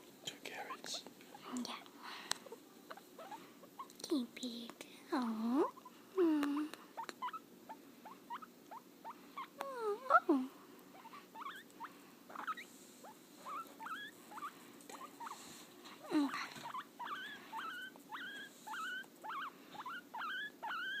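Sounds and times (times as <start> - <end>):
guinea pig wheeking: 2.4 - 4.0, 5.3 - 10.3, 10.9 - 21.0.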